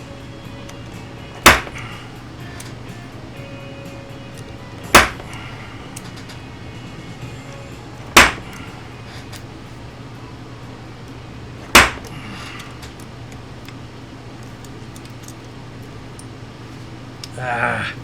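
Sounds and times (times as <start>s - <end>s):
steady low hum: 0.0s - 18.0s
hammer striking metal: 1.4s - 1.9s, 4.9s - 5.4s, 8.1s - 8.7s, 11.7s - 12.2s.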